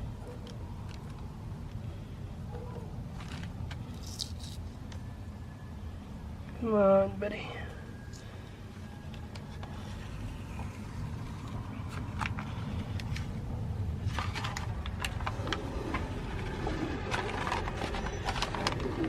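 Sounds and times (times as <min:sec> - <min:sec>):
steady low rumble: 0:00.0 - 0:19.0
plastic parts clicking and scraping: 0:03.1 - 0:05.0, 0:09.1 - 0:13.4, 0:14.0 - 0:19.0.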